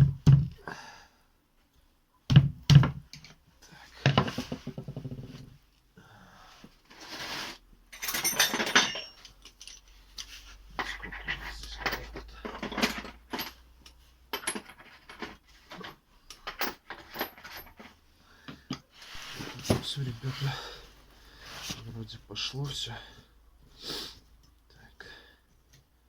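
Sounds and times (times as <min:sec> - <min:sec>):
hand tools clinking on metal: 0:07.9 - 0:13.6.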